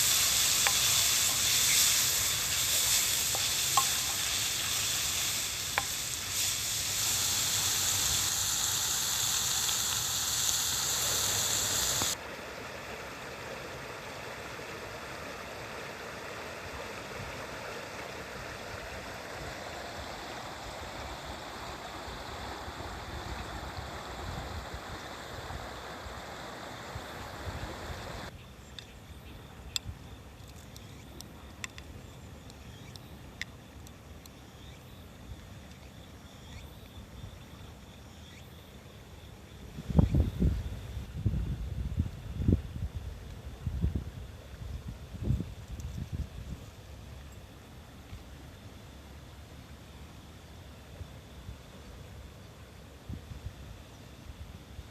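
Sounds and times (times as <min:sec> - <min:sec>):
food sizzling in a pan: 0:00.0 - 0:12.2.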